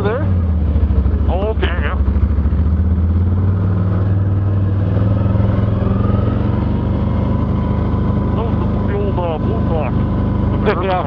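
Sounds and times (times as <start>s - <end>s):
atv engine running: 0.0s - 11.0s.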